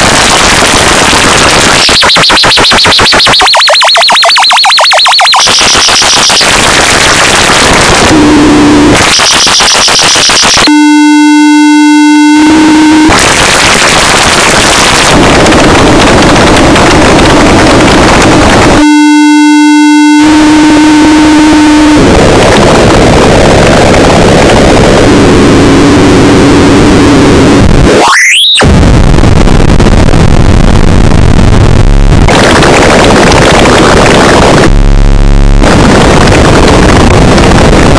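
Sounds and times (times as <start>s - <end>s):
pitched buzz tones: 0.0s - 15.2s, 18.8s - 22.4s
static-like electronic buzzing: 0.0s - 37.9s.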